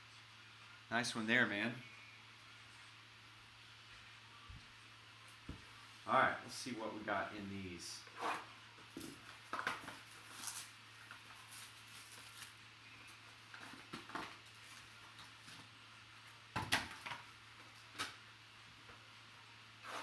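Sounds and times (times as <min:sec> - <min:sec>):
low steady hum: 0:00.0 - 0:19.9
cardboard packaging being handled: 0:08.2 - 0:15.8.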